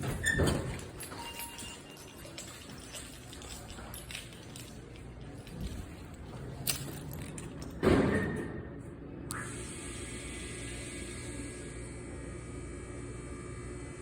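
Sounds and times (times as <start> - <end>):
elevator hum with rattles: 0.0 - 9.3.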